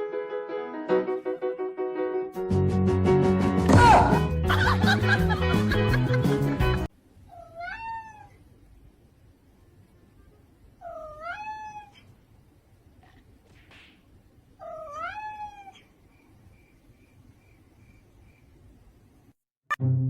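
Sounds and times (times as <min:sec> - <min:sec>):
cat meowing: 0:07.3 - 0:08.4, 0:10.8 - 0:12.2, 0:14.6 - 0:16.0.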